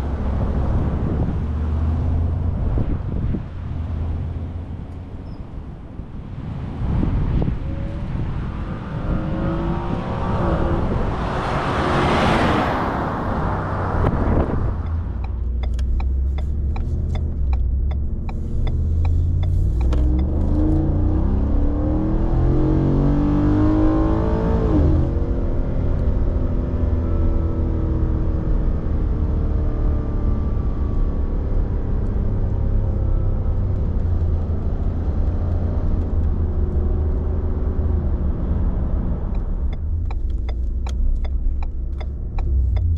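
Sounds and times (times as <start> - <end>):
wind noise: 0.0 - 25.3
vehicle engine rumbling: 0.0 - 42.9
sharp clicks: 14.8 - 20.5, 39.4 - 42.9.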